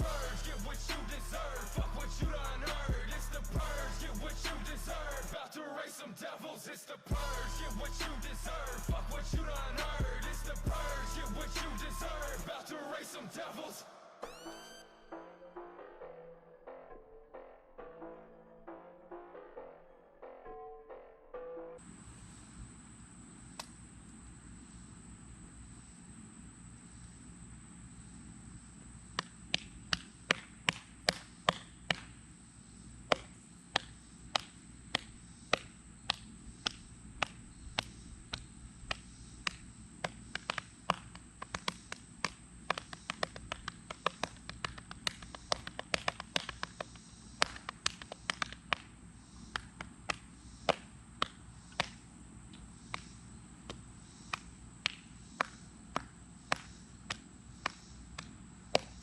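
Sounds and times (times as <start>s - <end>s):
sharp taps: 33.1s - 48.9s.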